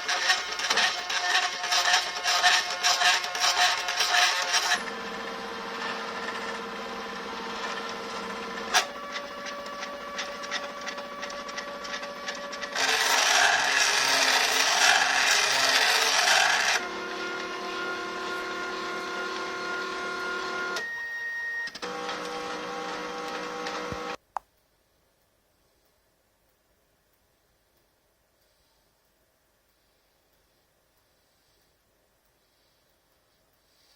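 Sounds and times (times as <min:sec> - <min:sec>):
stepper motors whining: 0:00.0 - 0:24.2.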